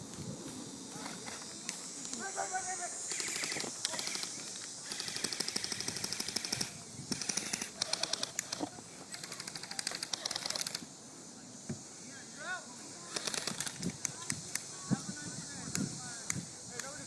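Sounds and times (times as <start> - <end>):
airsoft guns firing bursts: 3.1 - 10.9, 13.1 - 14.0.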